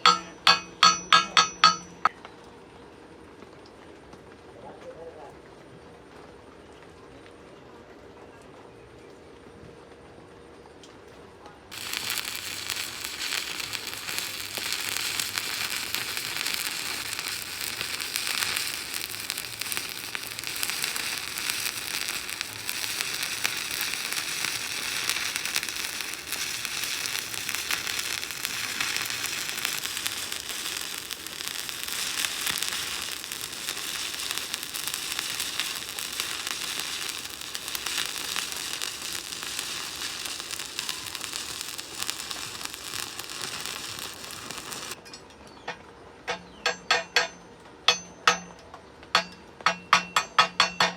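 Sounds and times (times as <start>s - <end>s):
welding arc crackling: 0.0s - 2.1s, 11.7s - 45.0s.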